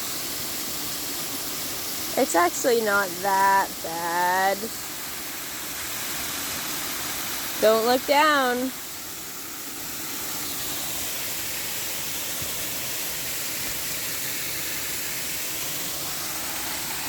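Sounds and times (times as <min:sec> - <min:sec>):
waterfall roaring: 0:06.2 - 0:17.0.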